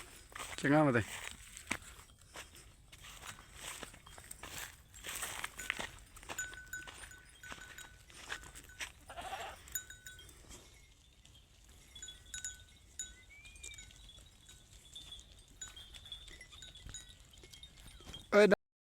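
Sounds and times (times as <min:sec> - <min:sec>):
faint high tinkling: 0:00.0 - 0:18.6
goat bleat: 0:09.0 - 0:09.9.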